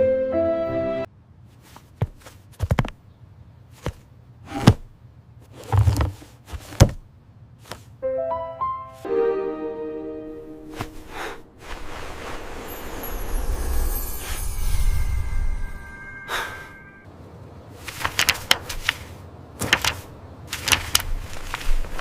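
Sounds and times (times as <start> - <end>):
gentle music: 0.0 - 1.1, 8.0 - 17.2
irregular knocks and thuds: 2.0 - 3.0, 5.6 - 7.1.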